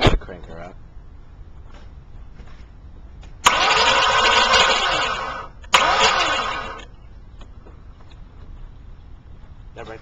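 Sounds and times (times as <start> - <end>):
car engine cranking: 3.4 - 6.9.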